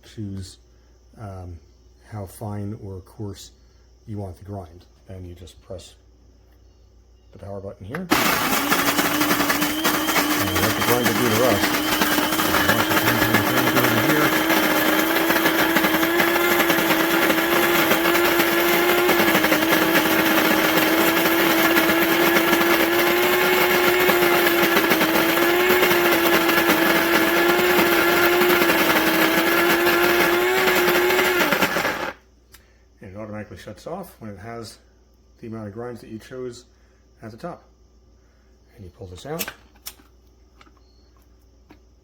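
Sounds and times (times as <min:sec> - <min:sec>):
coffee grinder grinding: 0:08.0 - 0:32.2.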